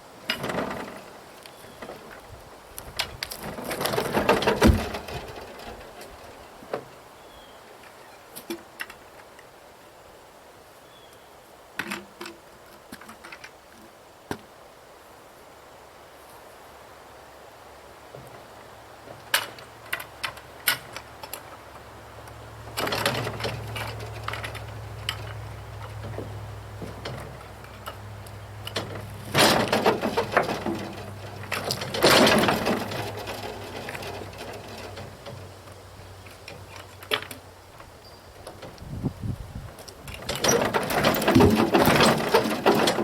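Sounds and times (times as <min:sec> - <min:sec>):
loud bursts of clatter: 0:28.8 - 0:35.4, 0:40.2 - 0:43.0.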